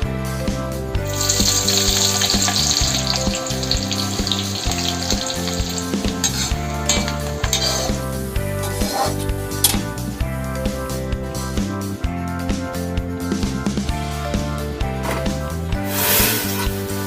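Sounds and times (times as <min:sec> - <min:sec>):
background music: 0:00.0 - 0:17.0
onions sizzling in hot oil: 0:01.1 - 0:09.9, 0:15.9 - 0:16.6.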